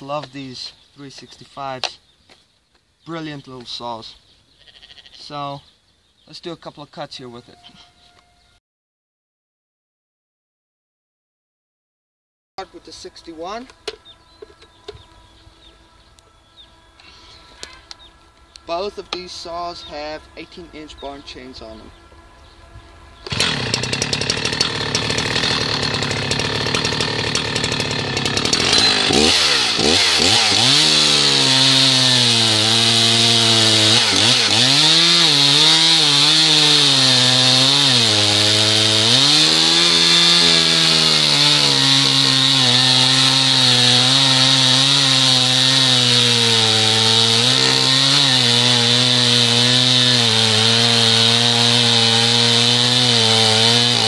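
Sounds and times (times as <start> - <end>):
chainsaw cutting wood: 23.2 - 54.0.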